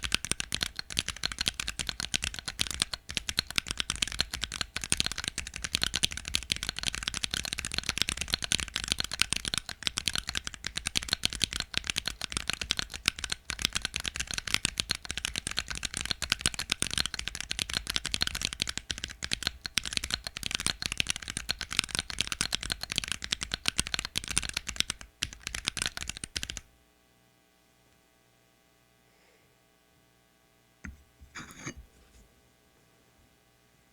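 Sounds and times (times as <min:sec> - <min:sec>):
mechanical keyboard typing: 0:00.0 - 0:26.6.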